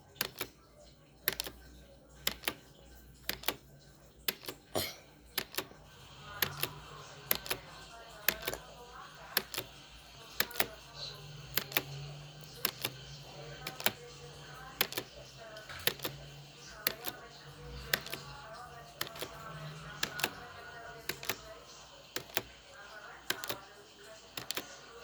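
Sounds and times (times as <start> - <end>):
faint voices or music: 0.0 - 25.0
timer ticking: 2.2 - 2.6, 3.2 - 3.6, 6.3 - 23.7.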